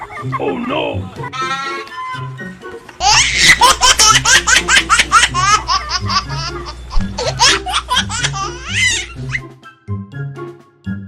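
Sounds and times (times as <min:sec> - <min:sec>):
background music: 0:00.0 - 0:11.0
high-pitched laughter: 0:03.0 - 0:09.4.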